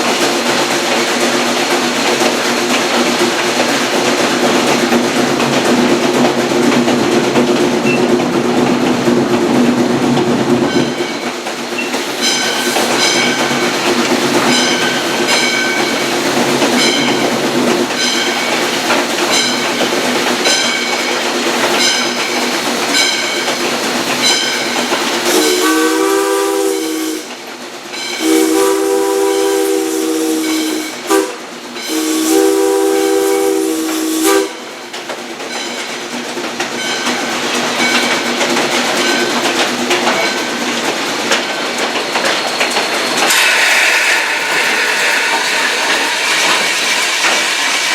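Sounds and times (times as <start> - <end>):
train running noise: 0.0 - 47.9
steam locomotive bell ringing: 7.8 - 8.2, 10.6 - 27.2, 27.9 - 34.5, 35.4 - 36.0, 36.7 - 40.8, 41.9 - 47.9
steam whistle blasts: 25.3 - 27.3, 28.2 - 34.7, 43.3 - 47.9.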